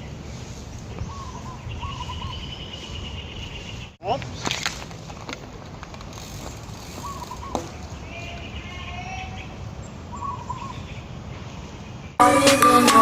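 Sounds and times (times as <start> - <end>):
music: 12.2 - 13.0.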